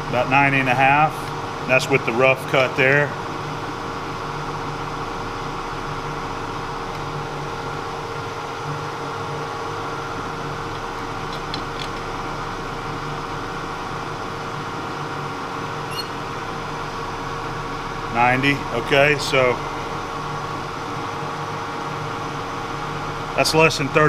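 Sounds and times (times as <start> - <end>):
milling machine humming: 0.0 - 24.0.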